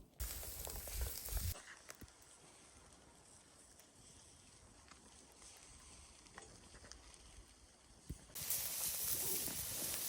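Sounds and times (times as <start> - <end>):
hot dogs sizzling: 0.2 - 10.0.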